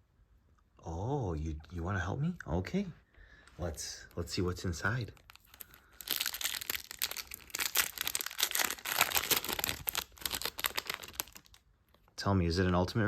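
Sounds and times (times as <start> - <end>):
foil wrapper crinkling and tearing: 4.8 - 12.1.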